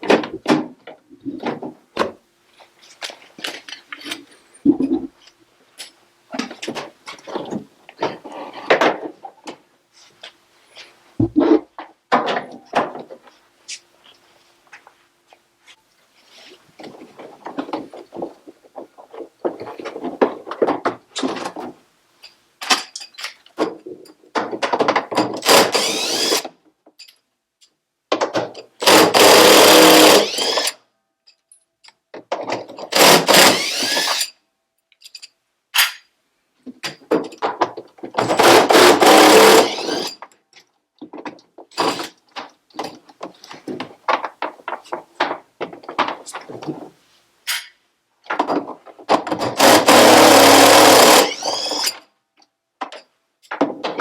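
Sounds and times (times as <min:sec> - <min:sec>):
clicks and clatter of parts: 0:16.8 - 0:54.0
power drill whining: 0:25.4 - 0:26.4, 0:28.8 - 0:30.8, 0:32.9 - 0:34.3, 0:38.4 - 0:40.2, 0:41.8 - 0:42.1, 0:49.6 - 0:52.0.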